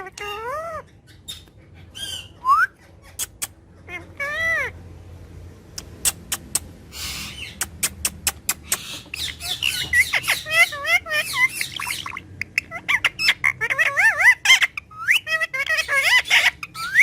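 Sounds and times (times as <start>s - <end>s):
parrot whistling and squawking: 0.0s - 4.7s, 5.8s - 17.0s
parrot clicking: 5.8s - 6.7s, 7.6s - 9.2s
parrot hissing: 5.8s - 9.3s.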